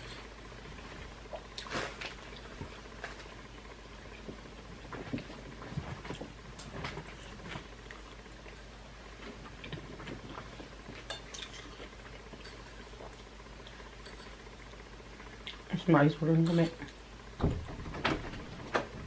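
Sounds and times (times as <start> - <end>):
chewing crunchy food: 1.2 - 14.5.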